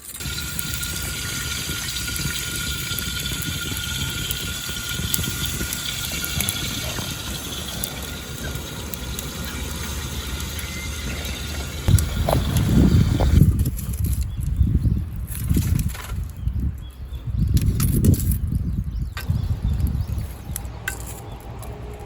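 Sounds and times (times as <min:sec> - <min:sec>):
campfire crackling: 0:00.0 - 0:14.2, 0:19.2 - 0:22.0.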